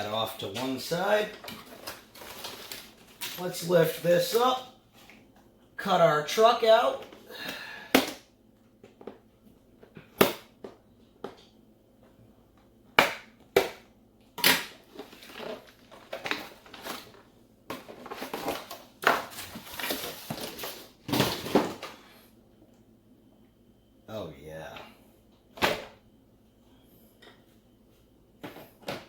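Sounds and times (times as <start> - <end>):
packaging rustling and scraping: 0.2 - 4.5, 14.8 - 22.2.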